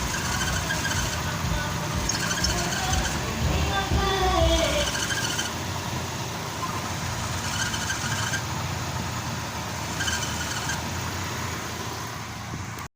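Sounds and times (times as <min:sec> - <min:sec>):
belt squealing: 0:00.0 - 0:01.4, 0:02.0 - 0:05.6, 0:06.6 - 0:08.6, 0:09.8 - 0:11.0
car engine idling: 0:00.0 - 0:12.9.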